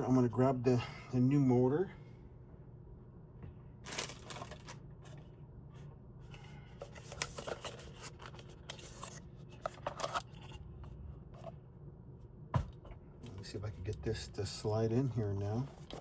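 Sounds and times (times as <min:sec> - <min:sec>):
low steady hum: 0:00.0 - 0:16.0
rustling and crinkling: 0:03.8 - 0:05.3, 0:06.3 - 0:11.6, 0:15.2 - 0:16.0.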